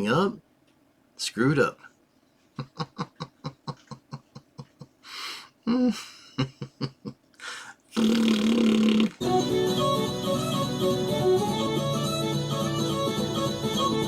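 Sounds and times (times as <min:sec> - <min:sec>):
person laughing: 0:02.6 - 0:07.3
breathy gasps: 0:07.4 - 0:07.9
music: 0:09.2 - 0:14.0.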